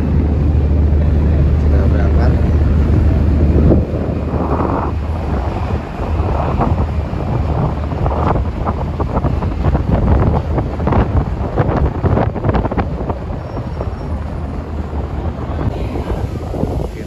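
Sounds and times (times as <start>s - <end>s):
ship engine rumble: 0.0s - 17.0s
wind gusting over microphone: 0.0s - 17.0s.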